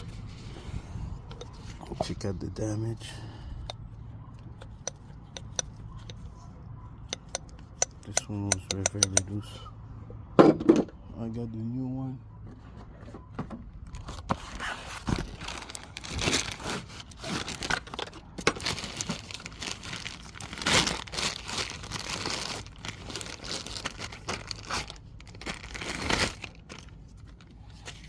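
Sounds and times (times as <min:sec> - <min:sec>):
plastic packaging crinkling: 0:13.9 - 0:28.0.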